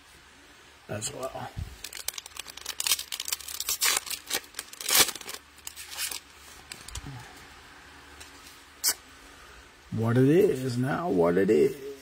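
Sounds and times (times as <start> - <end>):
plastic wrapper crinkling and tearing: 1.8 - 7.1.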